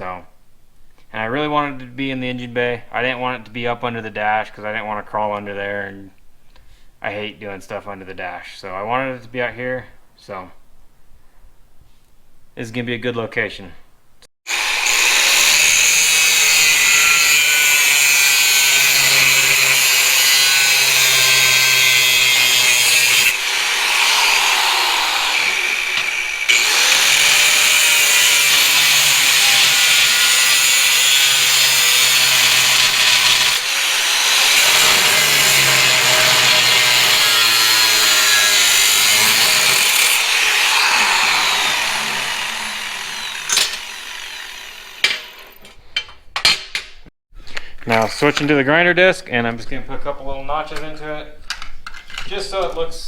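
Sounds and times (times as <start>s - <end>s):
angle grinder cutting steel: 14.5s - 45.6s.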